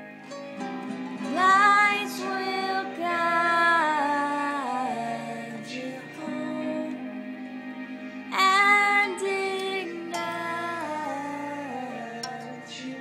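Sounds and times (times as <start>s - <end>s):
sustained accompaniment tone: 0.0s - 13.0s
child singing: 1.3s - 7.0s, 8.4s - 13.0s.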